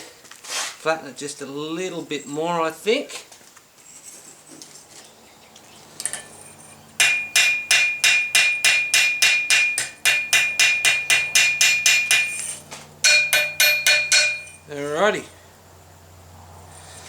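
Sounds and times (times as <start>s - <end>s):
hammer ringing on anvil: 7.0s - 14.8s.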